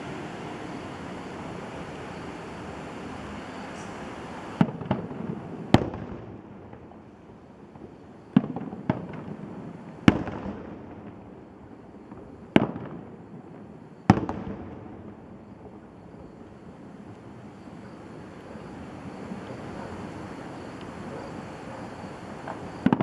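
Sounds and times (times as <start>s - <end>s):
background rush: 0.0s - 4.6s
fireworks bursting with bangs: 0.0s - 23.0s.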